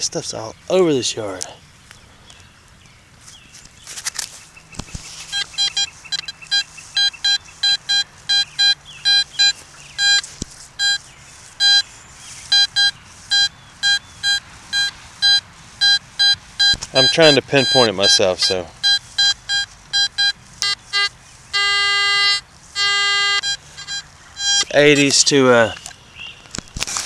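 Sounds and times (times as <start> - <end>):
metal detector beeping: 4.8 - 25.9.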